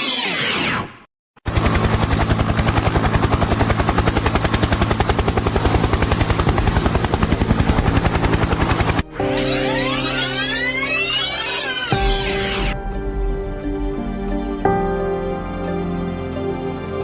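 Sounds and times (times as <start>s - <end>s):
helicopter rotor chopping: 1.4s - 12.8s.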